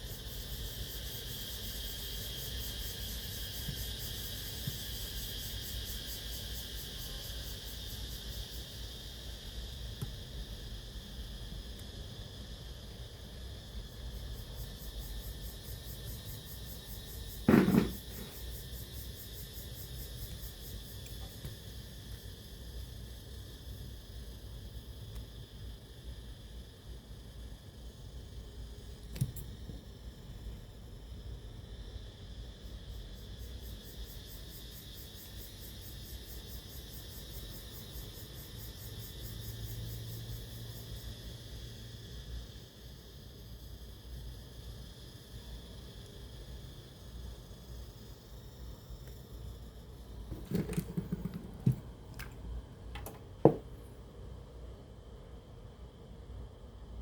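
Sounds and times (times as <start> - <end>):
loud clunk: 17.5 - 18.4, 53.0 - 53.7.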